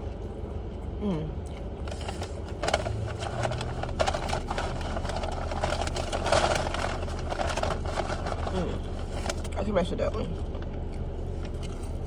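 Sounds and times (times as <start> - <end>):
car engine idling: 0.0 - 12.0
close clicks and crinkling: 1.6 - 9.6.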